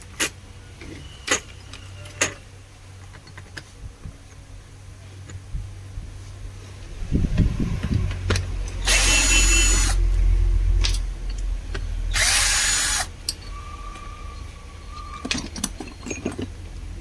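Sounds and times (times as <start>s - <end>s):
handheld power tool running: 8.8s - 10.0s, 12.1s - 13.2s
handling clicks and knocks: 15.1s - 17.0s.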